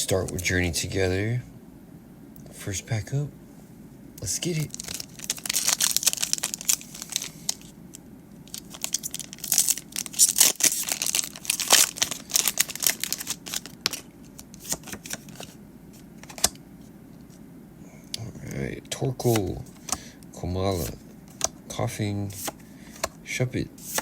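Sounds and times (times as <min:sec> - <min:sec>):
foil wrapper tearing and crinkling: 0:04.7 - 0:07.7, 0:08.5 - 0:15.5.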